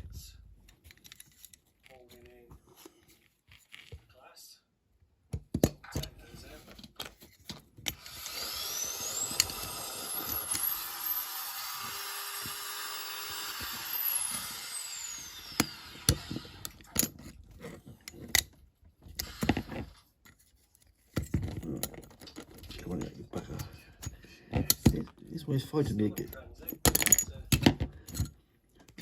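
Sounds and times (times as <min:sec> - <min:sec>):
metal parts clicking and knocking: 0:00.6 - 0:02.0, 0:15.5 - 0:20.4, 0:21.0 - 0:25.1, 0:25.8 - 0:29.0
power drill drilling metal: 0:07.9 - 0:17.3, 0:19.1 - 0:20.0.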